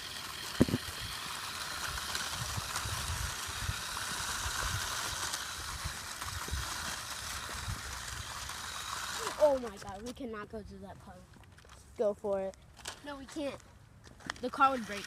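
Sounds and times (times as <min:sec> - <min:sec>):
toy car electric motor whir: 0:00.0 - 0:10.4, 0:14.3 - 0:15.0.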